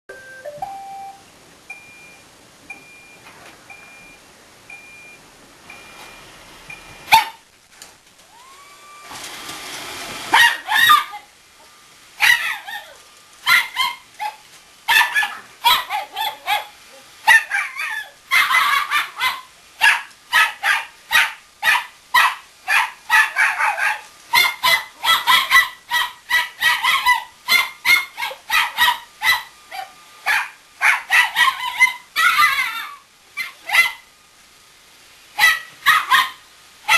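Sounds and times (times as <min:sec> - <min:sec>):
small dog yapping: 0:07.1 - 0:07.4, 0:10.3 - 0:11.3, 0:12.2 - 0:34.1, 0:35.4 - 0:36.9.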